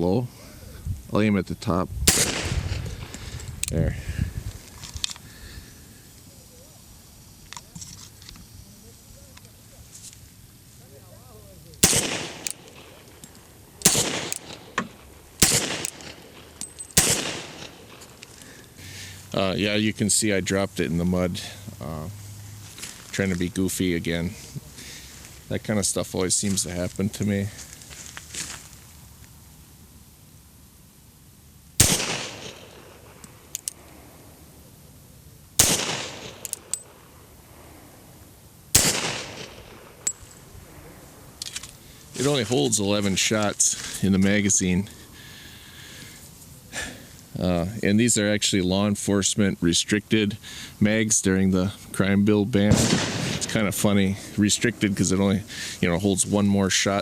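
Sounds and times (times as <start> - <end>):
pistol shots: 2.1 - 3.2, 11.8 - 18.2, 31.8 - 33.4, 35.6 - 37.2, 38.7 - 40.2, 52.7 - 53.6
faint sharp cracks: 11.7 - 18.8, 31.8 - 34.0, 35.6 - 37.2, 38.8 - 40.5
faint clicks: 33.1 - 34.0.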